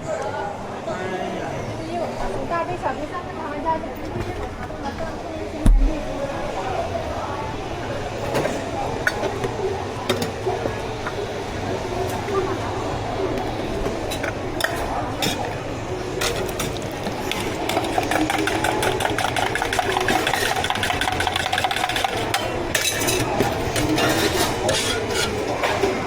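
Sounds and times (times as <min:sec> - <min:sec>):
low background hum: 0:01.8 - 0:26.0
cups and utensils clicking and scraping: 0:16.2 - 0:26.0.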